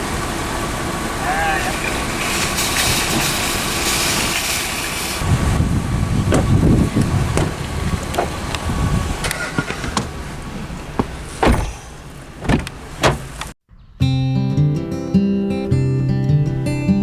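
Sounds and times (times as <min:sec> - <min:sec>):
car engine running: 0:05.2 - 0:13.6
clicks and knocks: 0:09.2 - 0:13.6.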